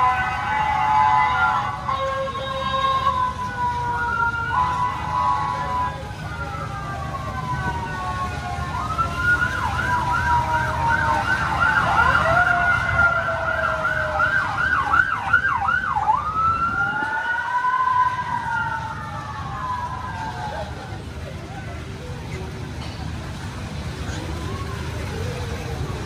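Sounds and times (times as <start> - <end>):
toy fire truck siren wailing: 0.0 - 20.6.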